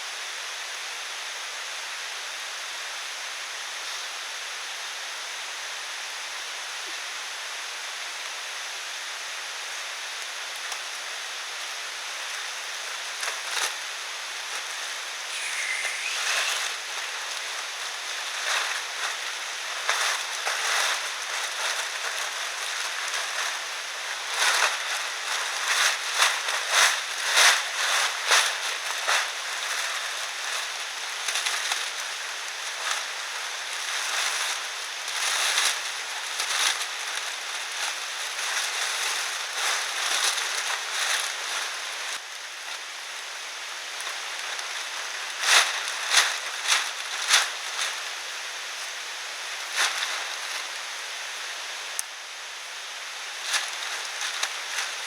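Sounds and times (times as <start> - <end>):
steady hiss: 9.5 - 42.2
rustling and crackling: 14.5 - 42.2, 44.0 - 48.3.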